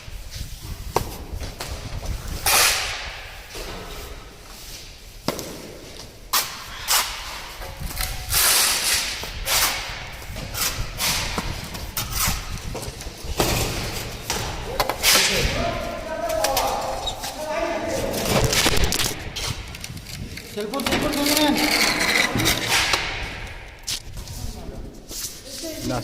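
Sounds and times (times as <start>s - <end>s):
hissing or scraping noise: 6.3s - 14.2s.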